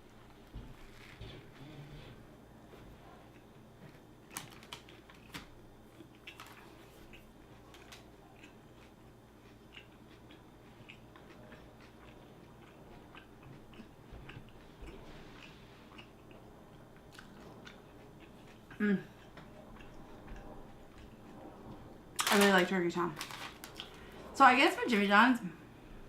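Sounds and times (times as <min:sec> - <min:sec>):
crunchy chewing: 0:03.2 - 0:22.4.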